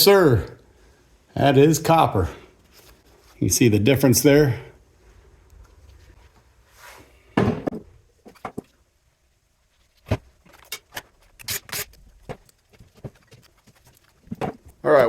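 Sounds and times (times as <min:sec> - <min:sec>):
metal parts scraping: 0:10.5 - 0:12.1.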